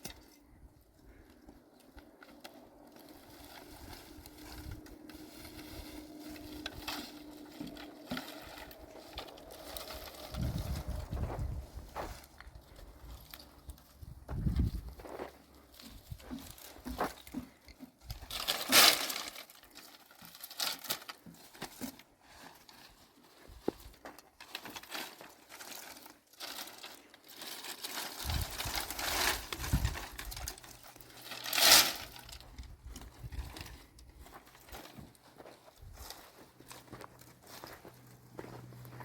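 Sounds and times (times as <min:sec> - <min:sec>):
rustling and crackling: 0:00.0 - 0:39.0
loud crunches: 0:02.7 - 0:22.5, 0:23.6 - 0:39.0.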